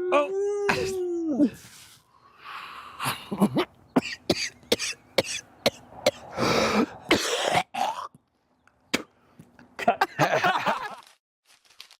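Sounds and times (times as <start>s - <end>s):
person coughing: 7.1s - 8.1s.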